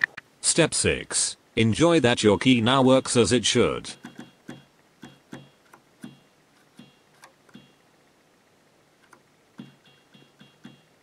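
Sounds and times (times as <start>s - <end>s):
electronic keyboard notes: 9.6s - 11.0s.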